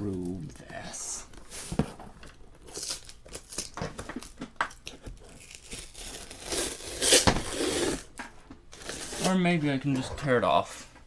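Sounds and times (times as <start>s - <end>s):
cardboard box being torn open: 5.2s - 8.1s
cardboard ripping sharply: 5.4s - 8.1s.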